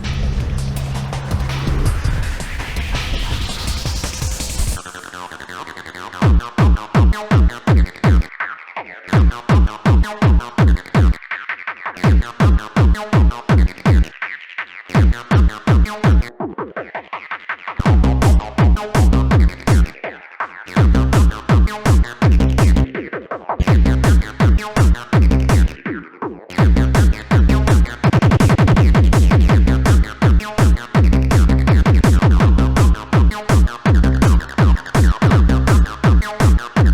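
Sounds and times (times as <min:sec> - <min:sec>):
fast drum roll: 0:00.0 - 0:04.9, 0:26.6 - 0:36.9
electronic dance music: 0:17.8 - 0:19.9, 0:20.8 - 0:22.9, 0:23.7 - 0:25.8, 0:26.6 - 0:36.9.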